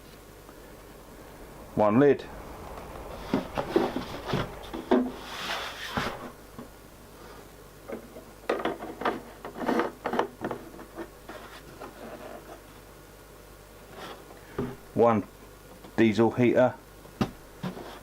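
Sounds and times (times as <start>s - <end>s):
parts knocking and rubbing: 3.0s - 6.4s.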